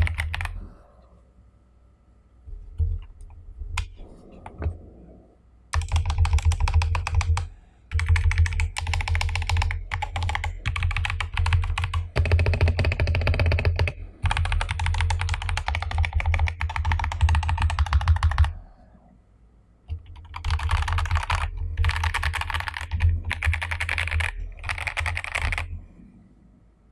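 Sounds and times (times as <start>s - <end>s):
mechanical keyboard typing: 0.0s - 0.7s, 5.7s - 18.6s, 19.9s - 25.8s.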